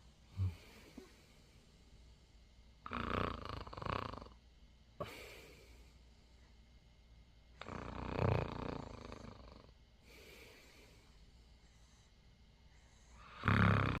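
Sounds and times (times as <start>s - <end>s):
baby snoring: 2.9s - 4.4s, 7.6s - 9.7s, 13.0s - 14.0s.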